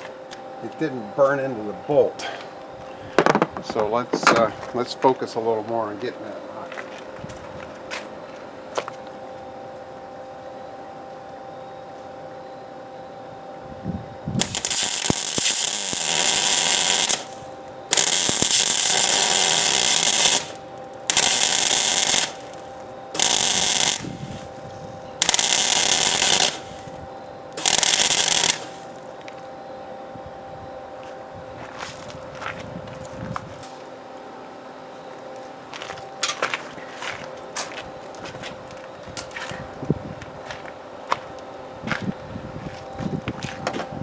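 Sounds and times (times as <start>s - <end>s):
steady hum: 0.0s - 44.0s
welding arc crackling: 14.4s - 29.4s.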